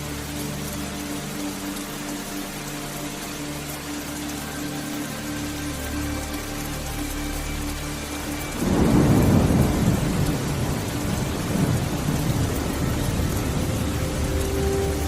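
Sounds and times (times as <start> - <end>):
rain: 0.0 - 15.0
thunder rumbling: 8.6 - 15.0.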